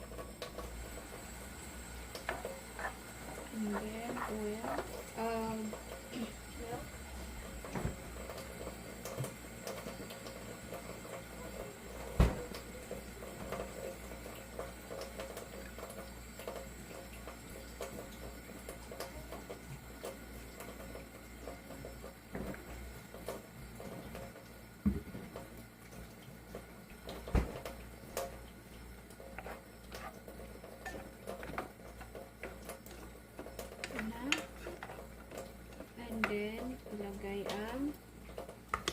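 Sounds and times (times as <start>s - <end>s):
low steady hum: 0.0s - 38.9s
utensil scraping in a pot: 2.3s - 5.9s, 29.2s - 35.4s.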